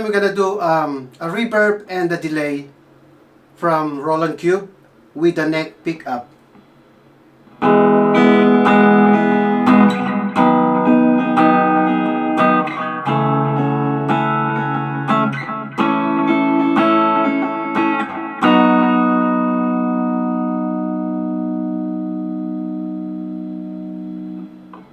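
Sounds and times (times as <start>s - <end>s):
electric guitar chords with reverb: 7.5s - 24.9s.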